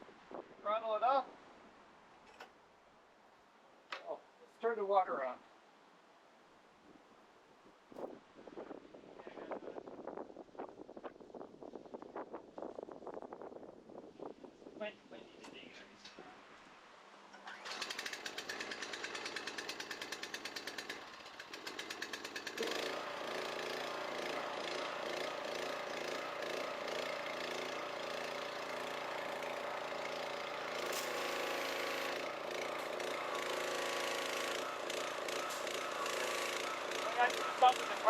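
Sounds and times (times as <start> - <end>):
small gas engine sputtering and running: 17.4 - 38.0.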